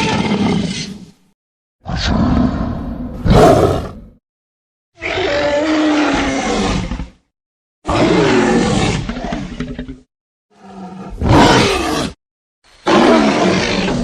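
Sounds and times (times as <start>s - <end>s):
roar sound effects: 1.8s - 4.2s, 5.0s - 12.2s.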